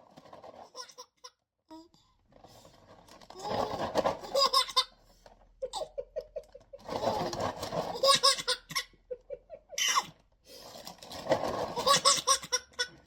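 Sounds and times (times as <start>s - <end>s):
baby belly-laughing: 3.4s - 5.0s, 5.6s - 10.2s, 11.6s - 13.0s
dry cereal rustling and rattling: 10.5s - 11.9s.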